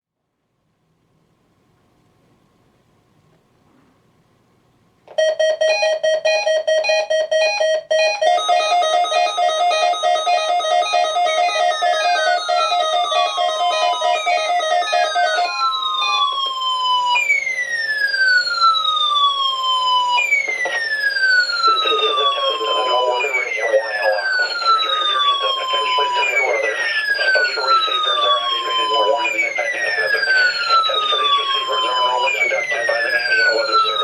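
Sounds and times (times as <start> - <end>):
falling siren-like sweeps: 8.2 - 34.0.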